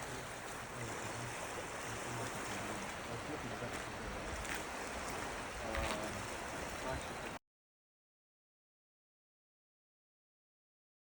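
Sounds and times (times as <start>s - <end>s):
lake water washing: 0.0s - 7.4s
wind: 0.0s - 7.4s.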